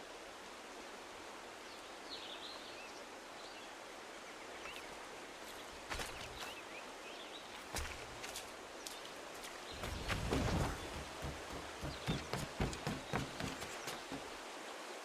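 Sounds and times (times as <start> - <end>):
steady outdoor hiss: 0.0 - 15.0
soft knocks: 9.8 - 14.3.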